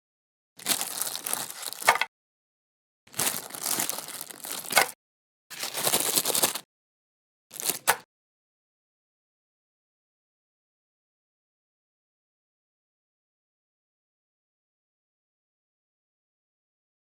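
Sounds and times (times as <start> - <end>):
wrappers crinkling: 0.6 - 2.1, 3.1 - 6.6, 7.5 - 8.0.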